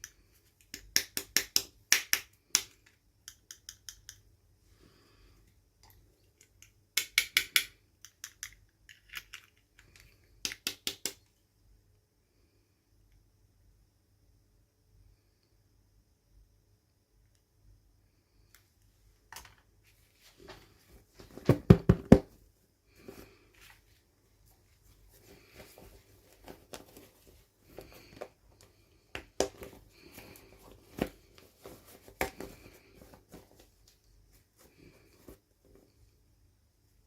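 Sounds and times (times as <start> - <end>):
small hard pieces clicking: 6.4 - 11.2.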